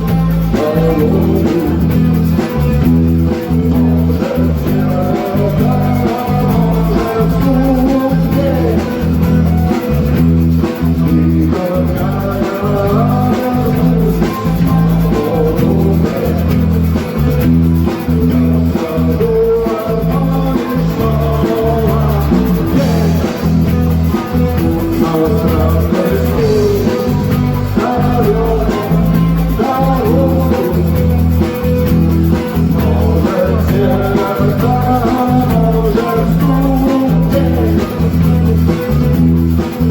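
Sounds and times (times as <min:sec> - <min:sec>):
person singing: 0:00.0 - 0:39.9
rock song with band: 0:00.0 - 0:39.9.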